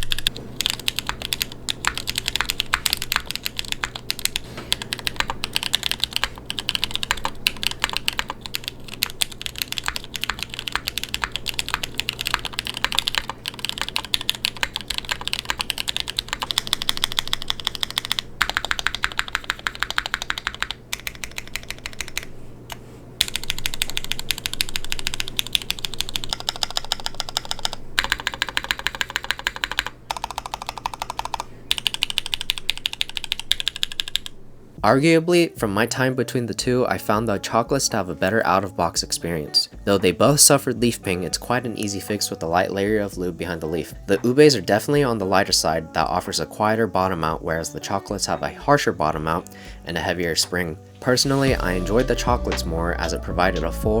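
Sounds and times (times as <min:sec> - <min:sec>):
mechanical keyboard typing: 0:00.0 - 0:22.4, 0:23.2 - 0:34.4.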